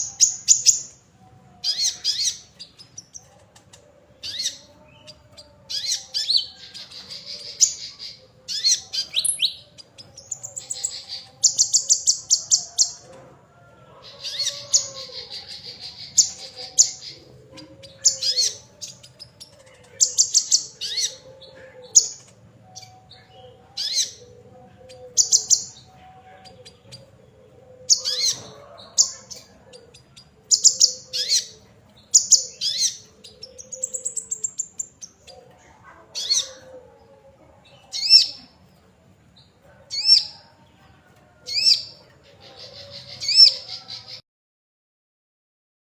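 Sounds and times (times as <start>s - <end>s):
songbird trilling and chattering: 1.6s - 3.3s, 4.2s - 13.1s, 27.9s - 35.5s.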